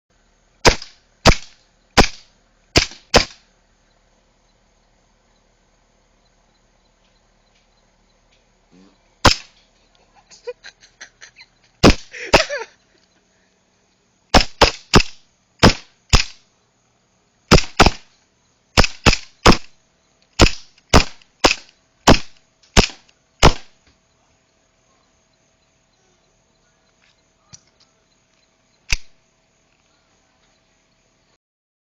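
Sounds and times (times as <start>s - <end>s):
airsoft pistol shots: 0.6s - 3.4s, 9.2s - 9.6s, 11.8s - 12.5s, 14.3s - 16.4s, 17.5s - 18.1s, 18.8s - 19.8s, 20.4s - 23.8s, 28.9s - 29.2s.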